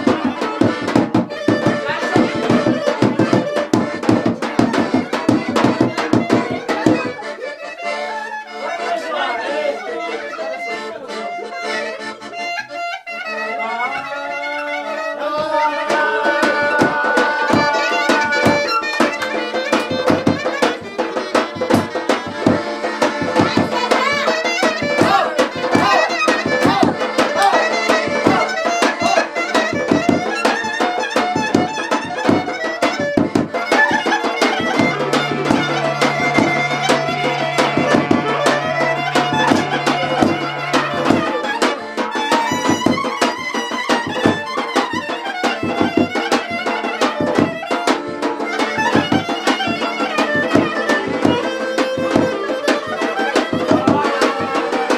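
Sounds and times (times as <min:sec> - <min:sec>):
accordion-like folk melody: 0:00.0 - 0:54.9
low held note: 0:15.8 - 0:19.6, 0:33.5 - 0:43.2.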